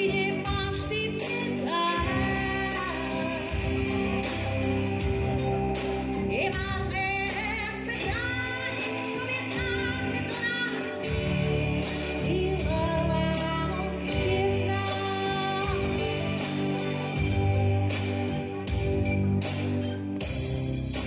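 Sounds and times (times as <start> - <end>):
woman singing: 0.0 - 4.3, 6.2 - 16.7
pop-rock band playing: 0.0 - 21.0.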